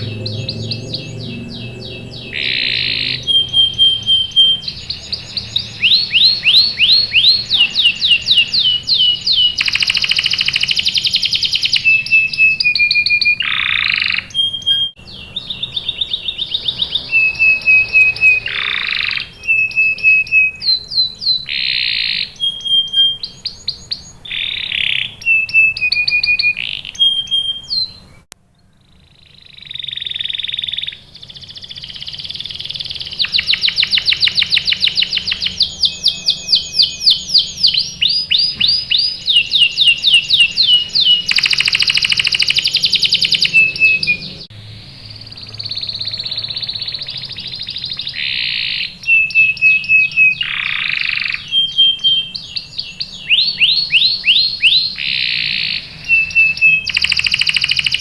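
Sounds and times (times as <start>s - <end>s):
canary singing: 0.0s - 58.0s.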